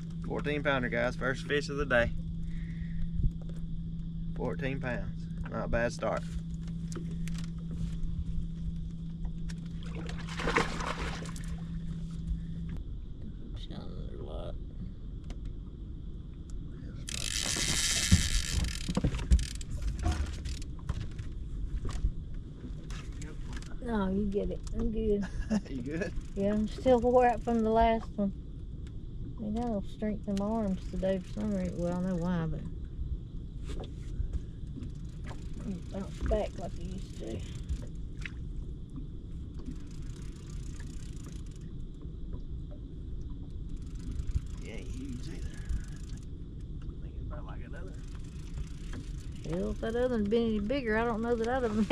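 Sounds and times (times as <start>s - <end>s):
steady low rumbling: 0.0s - 51.9s
fishing reel ratchet rattling: 17.0s - 21.2s, 23.1s - 23.8s, 39.6s - 41.7s, 43.7s - 46.3s, 47.9s - 51.7s.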